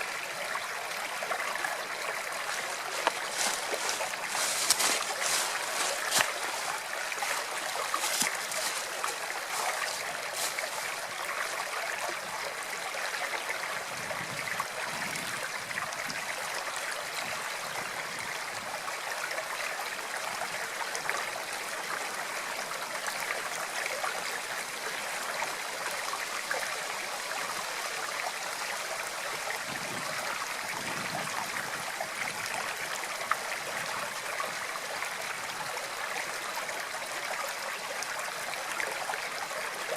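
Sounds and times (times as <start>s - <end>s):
stream water trickling: 0.0s - 39.9s
water splashing: 1.5s - 11.8s.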